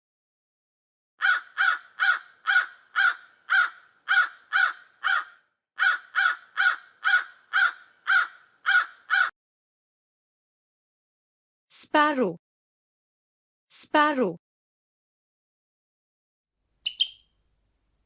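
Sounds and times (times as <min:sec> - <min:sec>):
crow cawing: 0:01.2 - 0:09.4.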